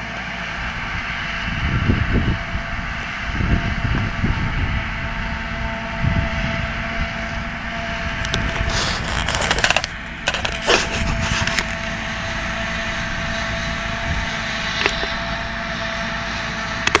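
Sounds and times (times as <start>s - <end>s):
machinery whine: 0.0s - 17.0s
tractor engine drone: 0.0s - 17.0s
crackling and clattering: 8.2s - 11.9s, 14.8s - 15.2s.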